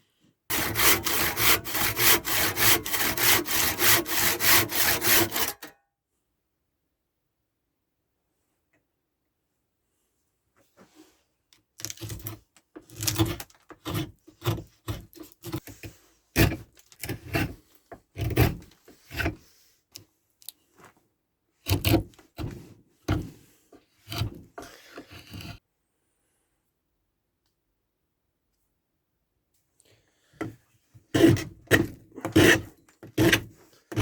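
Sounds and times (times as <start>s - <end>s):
tool knocking and scraping workpiece: 0.5s - 5.7s, 12.0s - 19.5s, 21.6s - 25.6s, 30.4s - 34.0s.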